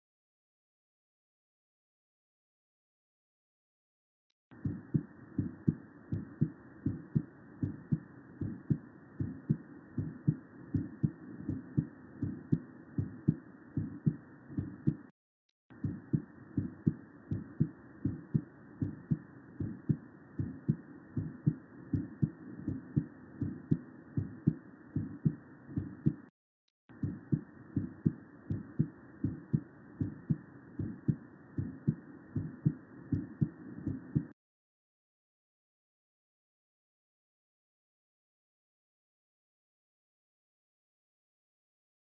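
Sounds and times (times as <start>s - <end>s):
heartbeat thuds: 4.6s - 15.1s, 15.8s - 26.3s, 26.9s - 34.3s.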